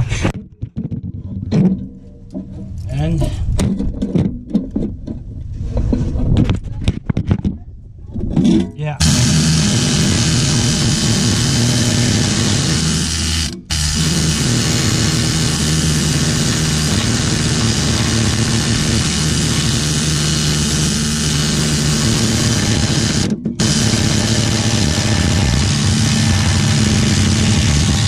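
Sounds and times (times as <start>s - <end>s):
engine running loudly: 9.0s - 28.0s.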